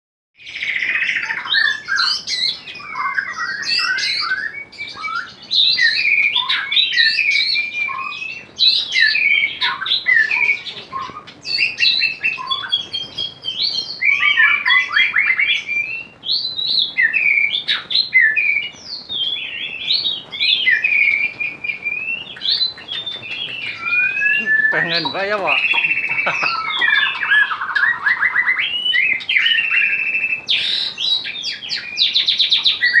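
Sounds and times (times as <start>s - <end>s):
songbird singing: 0.4s - 33.0s.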